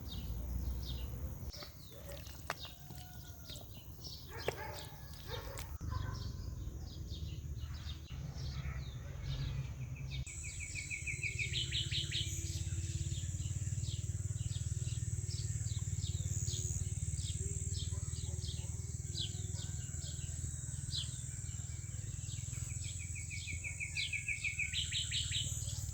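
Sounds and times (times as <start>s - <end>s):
continuous low rumble: 0.0s - 25.9s
songbirds chirping: 0.0s - 25.9s
bird trills: 10.3s - 19.7s.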